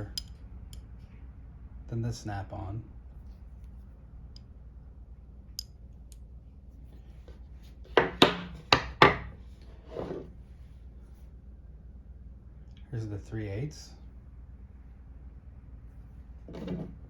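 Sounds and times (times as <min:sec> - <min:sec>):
soft scrape: 0:09.5 - 0:11.3.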